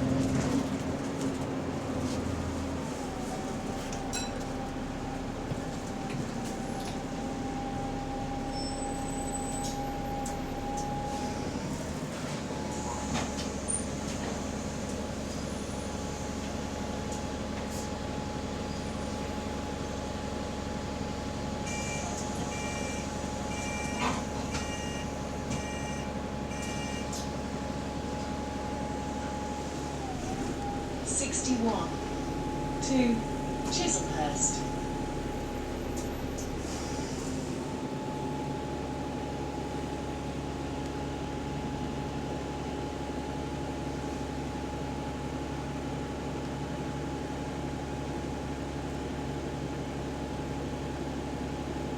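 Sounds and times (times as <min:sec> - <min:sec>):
bus engine and road noise: 0:00.0 - 0:51.9
short electronic beeps: 0:21.7 - 0:24.0.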